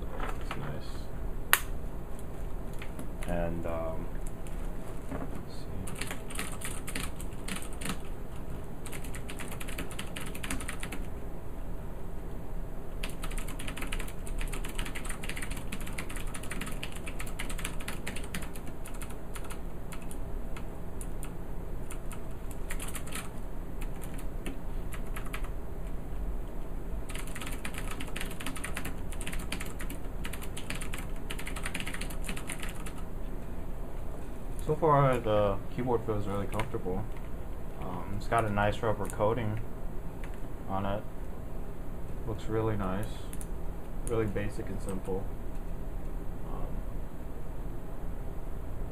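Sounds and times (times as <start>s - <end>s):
clicky mechanical keyboard typing: 5.8s - 8.1s, 8.8s - 11.1s, 13.0s - 25.5s, 27.1s - 33.0s, 36.5s - 37.3s.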